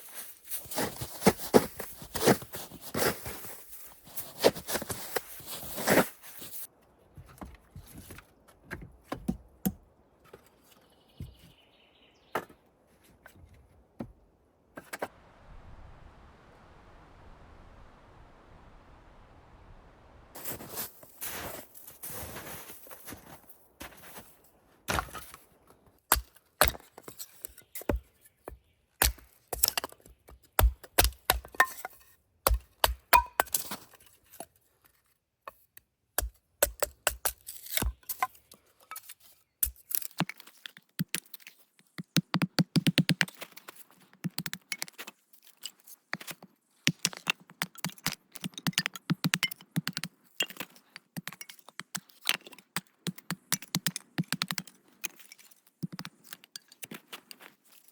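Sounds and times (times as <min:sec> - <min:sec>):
objects knocking and clicking: 0:46.2 - 0:57.3.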